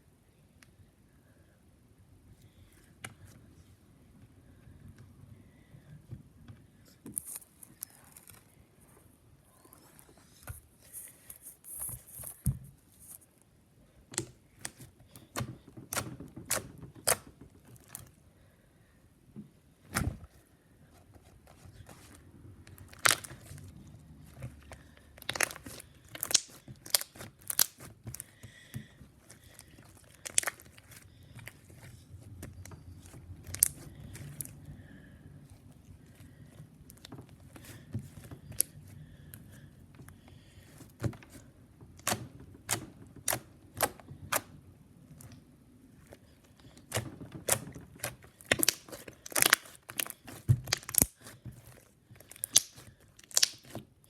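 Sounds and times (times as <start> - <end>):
slime squished and stretched: 7.0 - 8.5, 14.1 - 18.2, 21.6 - 34.7, 35.4 - 39.5, 40.1 - 54.0.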